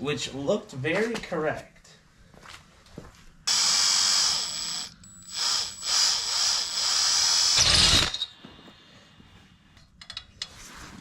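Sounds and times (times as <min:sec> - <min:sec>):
power drill boring through metal: 0:03.5 - 0:08.5.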